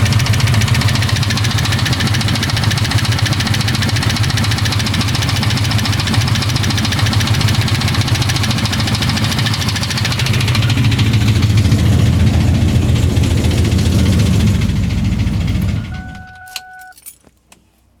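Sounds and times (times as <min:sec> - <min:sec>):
car engine idling with ticking: 0:00.0 - 0:17.0
short steady beep: 0:15.8 - 0:17.0.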